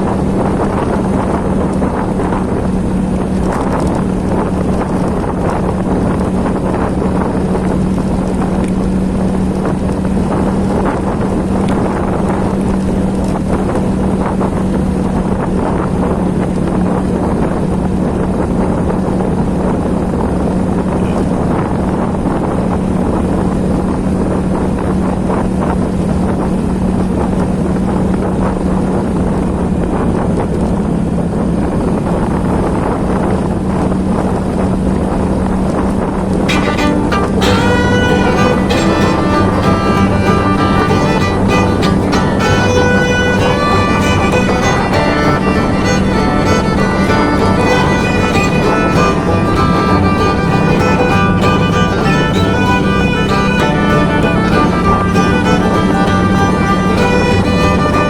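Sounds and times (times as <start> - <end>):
low hum: 36.5 - 58.0.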